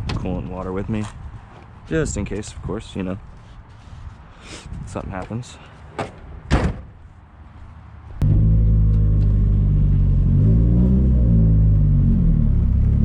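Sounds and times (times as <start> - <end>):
car engine running: 8.2 - 13.0.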